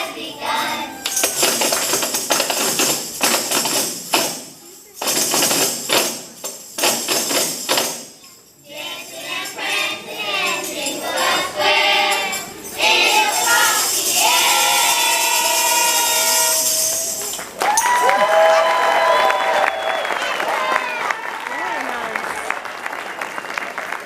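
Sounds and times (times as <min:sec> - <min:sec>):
children's choir singing: 0:00.0 - 0:01.8, 0:08.6 - 0:17.3
tambourine shakes and hits: 0:01.0 - 0:18.0.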